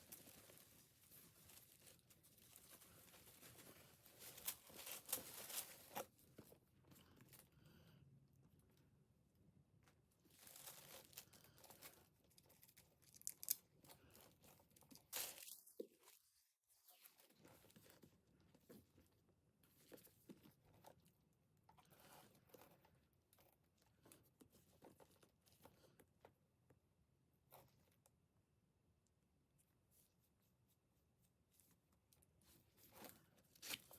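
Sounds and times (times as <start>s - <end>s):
packaging rustling and crinkling: 0.0s - 6.2s, 10.3s - 16.0s.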